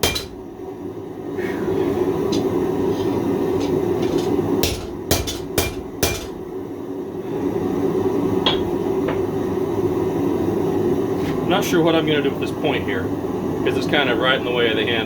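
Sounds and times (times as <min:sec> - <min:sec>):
hammer striking hot steel: 0:00.0 - 0:00.5, 0:03.6 - 0:06.4, 0:08.4 - 0:09.3.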